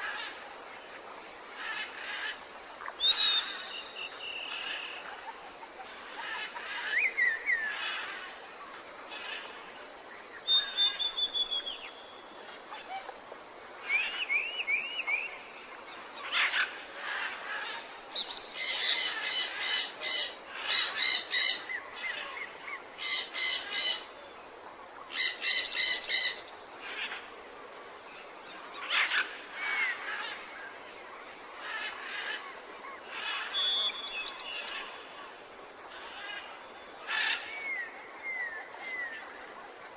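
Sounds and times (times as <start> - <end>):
steady background hiss: 0.0 - 39.9
rapidly pulsed bird call: 10.4 - 12.2
birds calling and chirping: 33.0 - 39.3.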